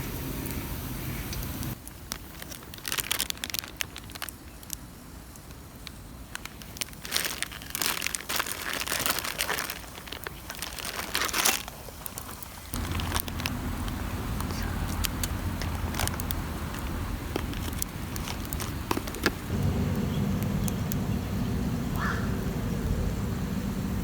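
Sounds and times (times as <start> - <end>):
crinkling and crumpling: 1.8 - 20.5.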